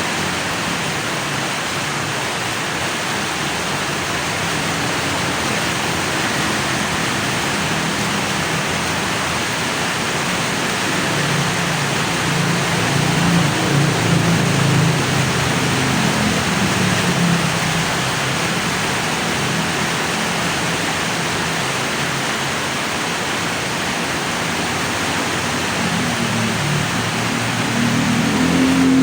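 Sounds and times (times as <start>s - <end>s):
light traffic hum: 0.0s - 29.0s
rain hissing on street: 0.0s - 29.0s
vehicle engine rumble: 0.0s - 29.0s.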